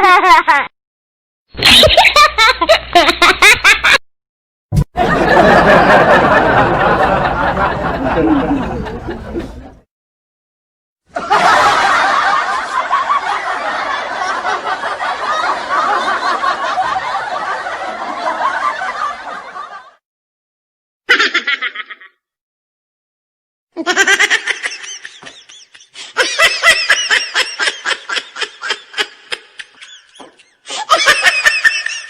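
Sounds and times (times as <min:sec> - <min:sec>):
laughing: 0:05.0 - 0:09.8
snickering laugh: 0:05.0 - 0:09.8, 0:21.1 - 0:22.2, 0:23.8 - 0:32.0.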